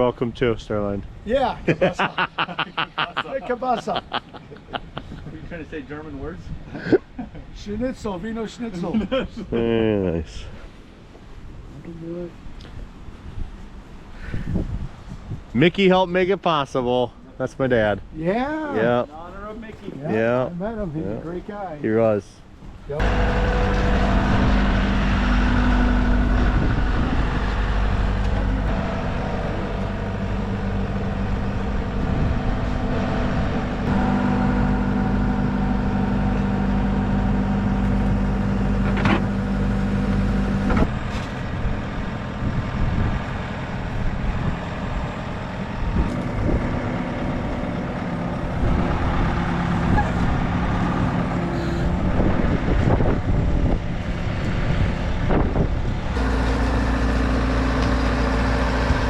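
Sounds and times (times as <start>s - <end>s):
vehicle engine running: 23.0s - 59.0s.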